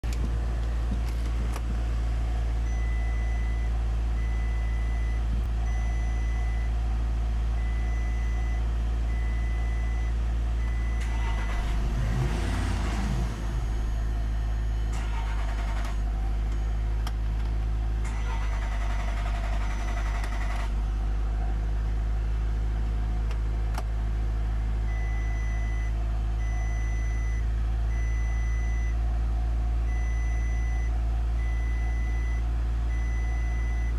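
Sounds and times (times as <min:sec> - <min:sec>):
steady low hum: 0:00.0 - 0:12.0
high electronic warning beep: 0:18.2 - 0:20.6.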